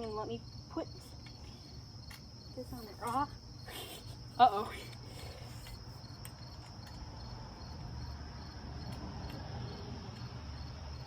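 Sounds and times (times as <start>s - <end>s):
cricket chirping: 0.0s - 11.0s.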